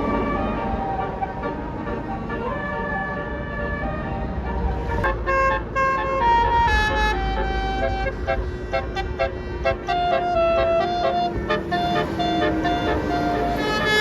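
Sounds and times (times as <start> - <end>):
bus engine rumbling: 0.0 - 14.0
multi-tone air horn tune: 5.0 - 14.0.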